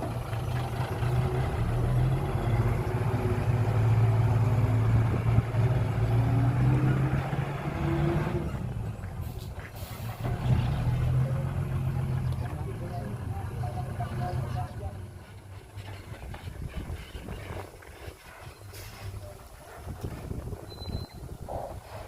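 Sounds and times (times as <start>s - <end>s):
heavy vehicle engine humming: 0.0s - 16.0s.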